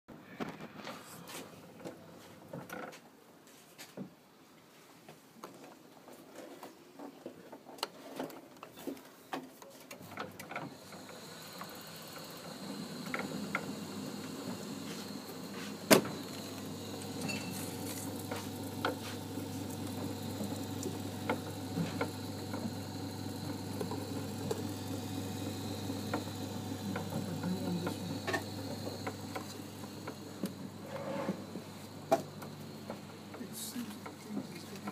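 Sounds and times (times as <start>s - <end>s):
pump humming: 10.0s - 34.9s
pump knocking and rattling: 10.0s - 34.9s.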